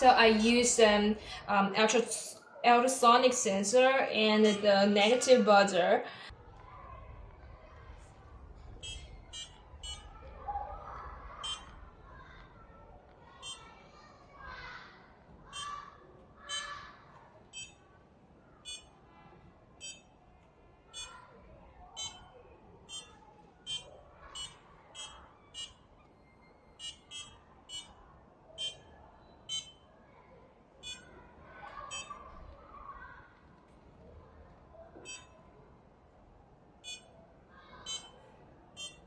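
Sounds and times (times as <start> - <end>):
piezo buzzer beeps: 8.8 - 10.1, 11.4 - 11.8, 13.4 - 13.7, 15.5 - 15.8, 16.5 - 16.8, 17.5 - 17.9, 18.6 - 19.0, 19.8 - 20.2, 20.9 - 21.3, 22.0 - 29.9, 30.8 - 31.2, 31.9 - 32.2, 35.1 - 35.4, 36.8 - 37.2, 37.9 - 39.0.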